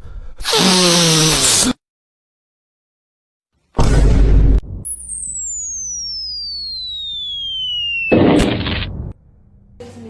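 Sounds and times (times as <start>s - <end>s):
high falling whistle: 4.8s - 8.5s.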